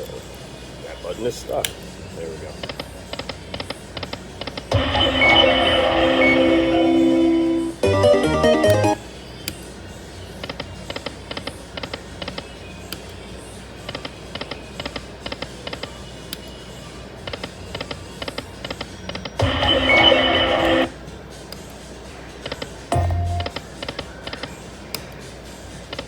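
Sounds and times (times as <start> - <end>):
rapid electronic ticking: 4.4 - 9.0, 19.1 - 21.0, 22.4 - 24.4
slot machine chime: 4.7 - 9.1, 19.4 - 20.9, 22.9 - 23.6
slot machine jingle: 4.7 - 9.1, 19.4 - 20.9, 22.9 - 23.6.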